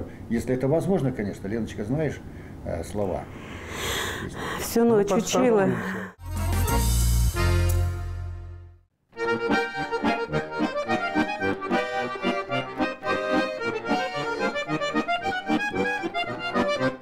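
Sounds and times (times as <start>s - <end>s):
accordion playing: 5.0s - 17.0s.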